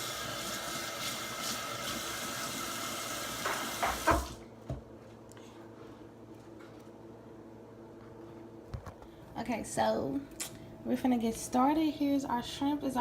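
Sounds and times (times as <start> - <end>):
faucet running into sink: 0.0 - 4.4.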